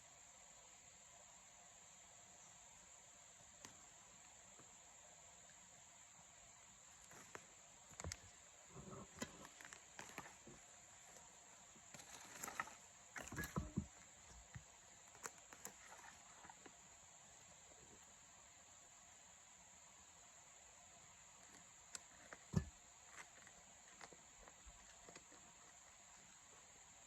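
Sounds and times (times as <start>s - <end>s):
insects chirring: 0.0s - 27.0s
digging in rocky soil: 7.0s - 16.7s.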